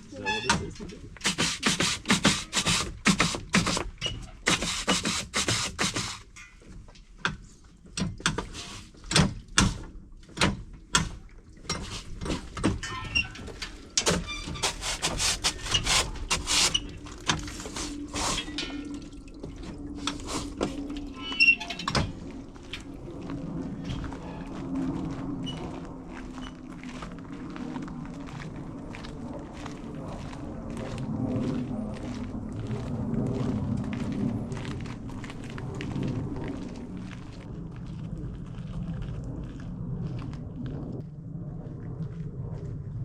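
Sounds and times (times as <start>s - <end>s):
low steady hum: 10.7s - 43.0s
footsteps crunching on track: 22.1s - 40.7s.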